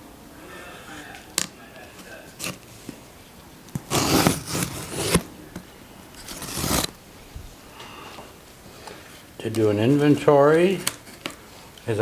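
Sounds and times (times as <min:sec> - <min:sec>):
cardboard box tearing: 0:03.8 - 0:05.3, 0:06.2 - 0:07.0.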